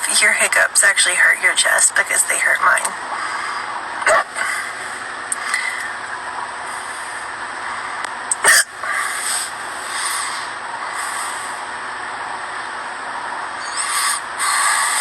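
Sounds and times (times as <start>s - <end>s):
steady background hiss: 0.0s - 15.0s
girl hiccuping: 4.0s - 4.5s, 8.4s - 8.7s.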